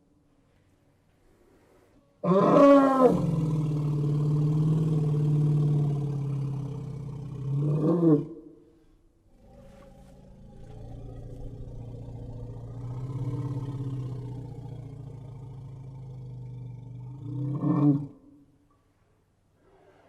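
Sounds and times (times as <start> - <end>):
elephant rumbling: 9.3 - 17.7.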